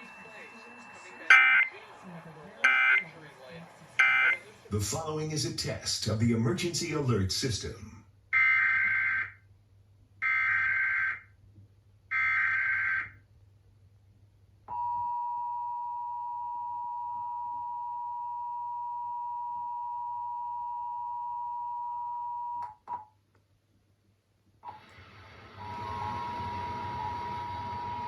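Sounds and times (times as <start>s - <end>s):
two-tone attention signal: 0.0s - 1.8s, 2.6s - 3.1s, 4.0s - 4.4s.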